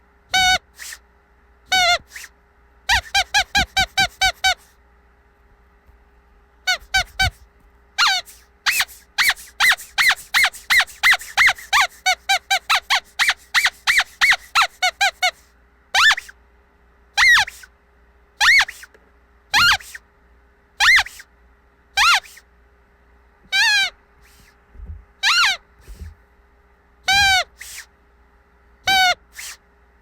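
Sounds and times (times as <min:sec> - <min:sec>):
squeaky dog toy squeaking: 0:00.3 - 0:01.0, 0:01.7 - 0:02.3, 0:02.9 - 0:04.7, 0:06.7 - 0:07.4, 0:08.0 - 0:16.4, 0:17.2 - 0:17.7, 0:18.4 - 0:18.9, 0:19.5 - 0:20.0, 0:20.8 - 0:21.3, 0:22.0 - 0:22.4, 0:23.5 - 0:24.5, 0:25.2 - 0:26.1, 0:27.0 - 0:27.9, 0:28.8 - 0:29.6.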